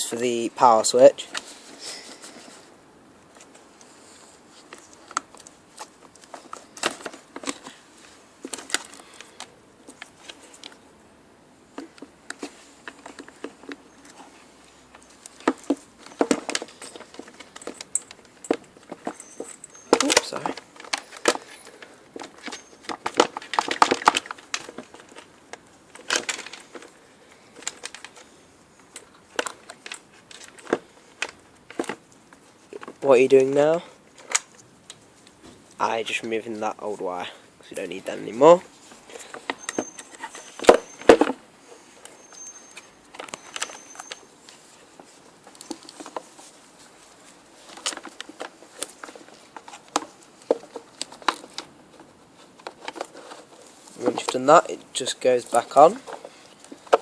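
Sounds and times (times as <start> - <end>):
plastic parts clicking and rattling: 4.6 - 10.8, 14.9 - 35.8, 42.0 - 57.0.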